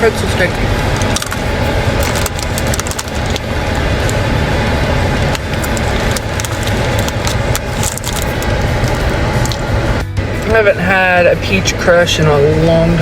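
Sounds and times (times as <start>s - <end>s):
low rumble: 0.0s - 13.0s
chewing crunchy pretzel: 1.0s - 3.5s, 5.2s - 9.7s.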